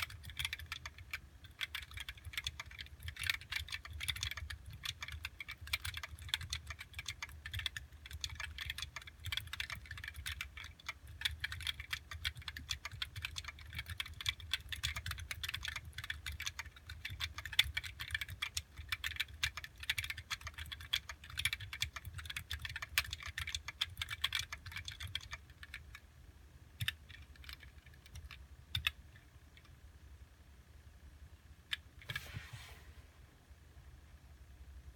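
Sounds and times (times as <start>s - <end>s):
fast typing on mechanical keyboard: 0.0s - 26.0s, 26.8s - 29.0s.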